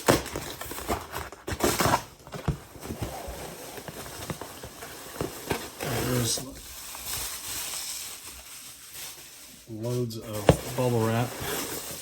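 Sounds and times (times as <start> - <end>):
cardboard rustling and knocks: 0.0 - 5.8, 10.3 - 11.8
cardboard tearing: 0.0 - 8.4, 10.3 - 12.0.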